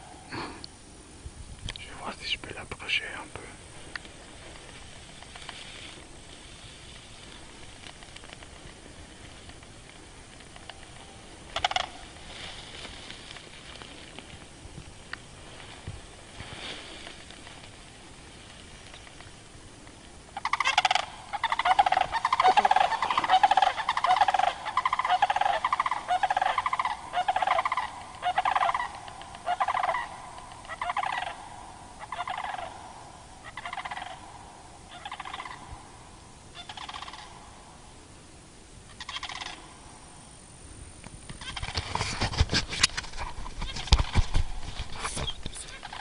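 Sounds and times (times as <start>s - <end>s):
cranes rattling bugle calls: 4.0s - 14.4s, 20.2s - 37.7s, 38.8s - 39.8s, 41.3s - 46.0s.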